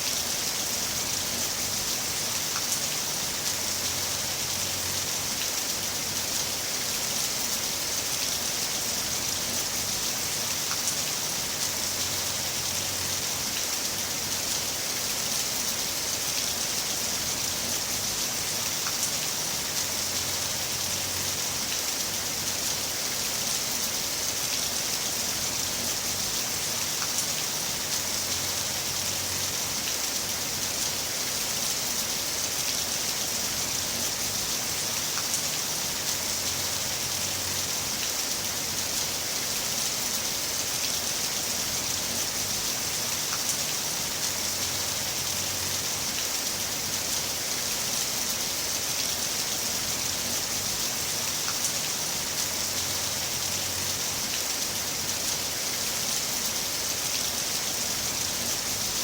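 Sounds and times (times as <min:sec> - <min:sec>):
heavy rain falling: 0:00.0 - 0:59.0
raindrop ticks: 0:35.1 - 0:36.2.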